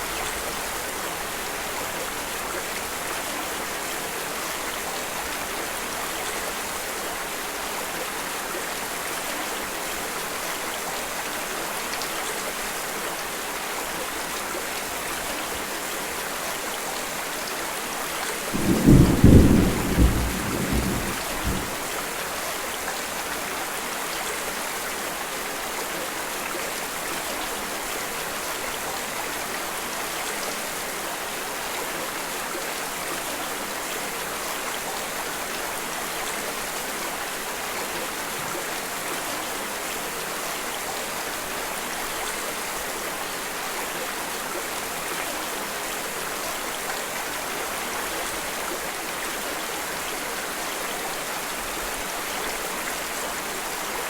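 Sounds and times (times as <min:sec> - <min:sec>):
steady rain falling: 0:00.0 - 0:54.0
thunder rumble: 0:18.6 - 0:21.8.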